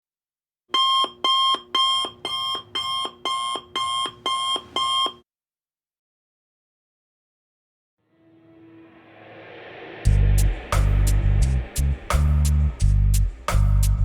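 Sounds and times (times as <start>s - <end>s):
electronic alarm beeping: 0.7s - 5.2s.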